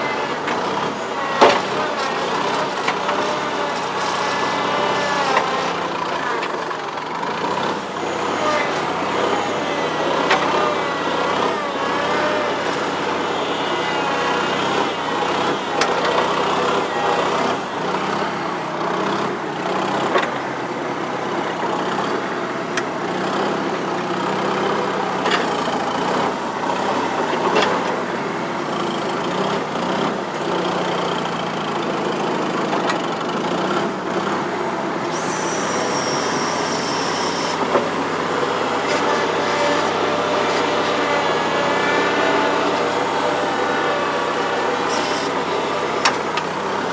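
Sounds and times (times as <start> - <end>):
loader engine running: 0.0 - 46.9
thin high squeal: 35.2 - 37.6.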